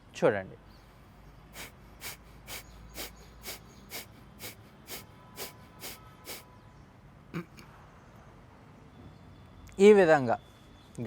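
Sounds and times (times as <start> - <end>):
forceful nasal exhalations: 1.5 - 6.5.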